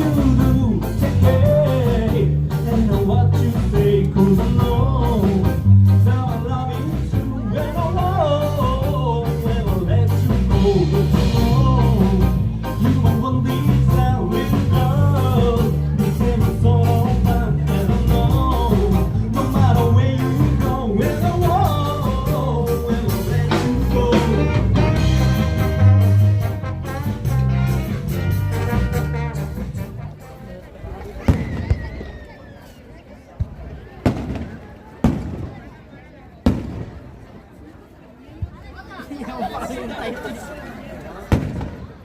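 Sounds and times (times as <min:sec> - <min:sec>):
upbeat music with singing: 0:00.0 - 0:26.2
bass-heavy beat: 0:00.0 - 0:30.3.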